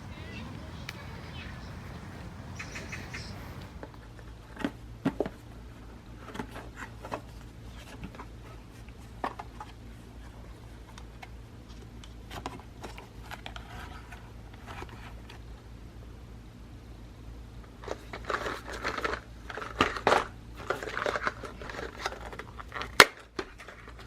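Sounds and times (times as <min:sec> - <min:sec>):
steady low hum: 0:00.0 - 0:04.2.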